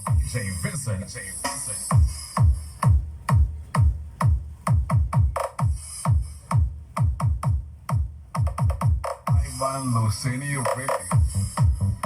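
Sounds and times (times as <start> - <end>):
electronic dance music: 0.0 - 12.0
booming kick drum: 1.9 - 9.5, 11.2 - 12.0.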